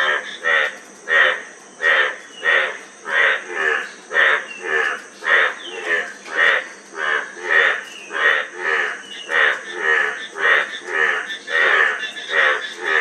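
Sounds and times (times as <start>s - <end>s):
frogs croaking: 0.0s - 13.0s.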